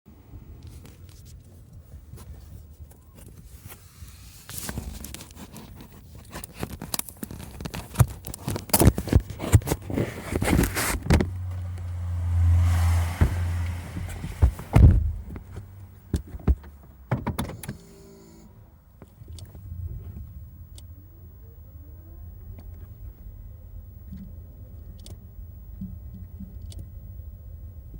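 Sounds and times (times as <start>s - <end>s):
low rumble: 9.8s - 16.2s, 19.2s - 24.0s.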